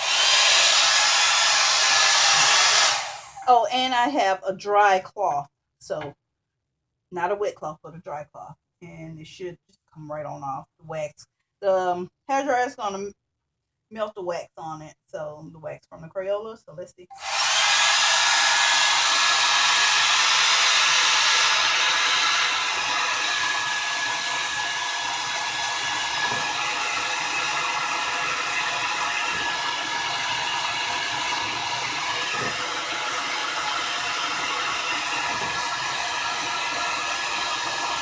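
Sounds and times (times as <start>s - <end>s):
hair dryer running: 0.0s - 3.5s, 17.2s - 38.0s.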